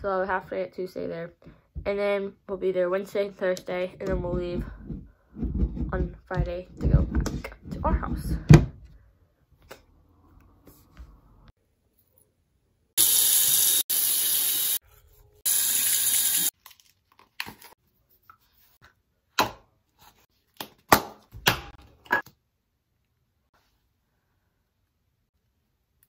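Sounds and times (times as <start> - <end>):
water running from tap: 13.0 - 14.8, 15.5 - 16.5.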